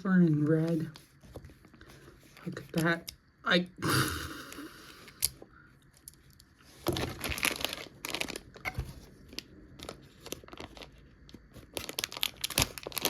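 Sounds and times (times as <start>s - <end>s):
packaging crinkling and tearing: 6.8s - 13.0s.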